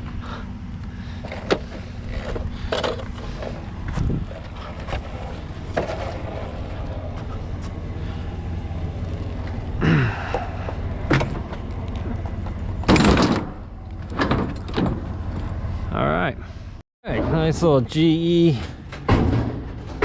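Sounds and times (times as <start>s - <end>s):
steady low rumble: 0.0s - 20.0s
metal scraping: 1.6s - 9.8s
metal bang: 18.8s - 20.0s.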